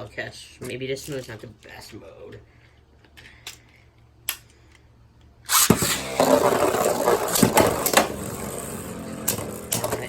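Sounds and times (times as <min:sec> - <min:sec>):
spinning tops whirring: 0:05.5 - 0:10.0.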